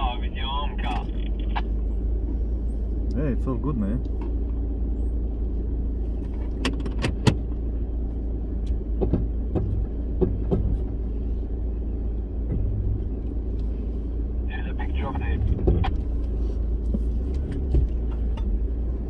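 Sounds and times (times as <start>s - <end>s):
vehicle engine running: 0.0s - 19.0s
knocks and rattles over bumps: 6.1s - 11.4s, 15.4s - 19.0s.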